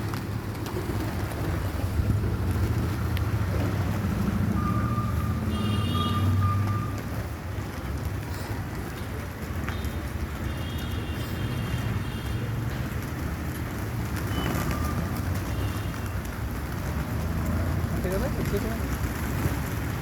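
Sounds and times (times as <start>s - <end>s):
traffic rumble: 0.0s - 20.0s.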